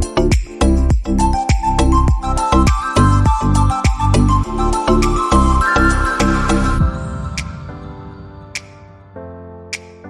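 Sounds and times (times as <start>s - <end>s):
electronic music with deep bass: 0.0s - 9.0s.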